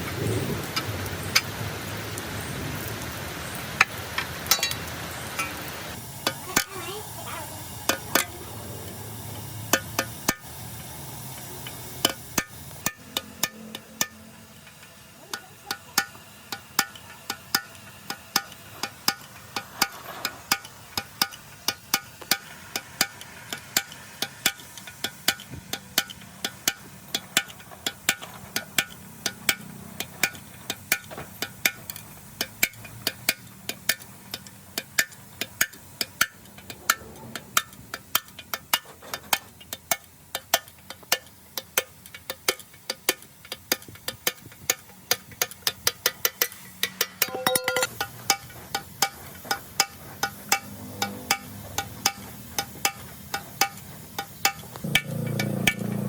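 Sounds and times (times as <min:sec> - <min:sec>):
steady hiss: 0:00.0 - 0:56.0
small hammer tapping on metal: 0:12.0 - 0:14.2, 0:15.3 - 0:56.0.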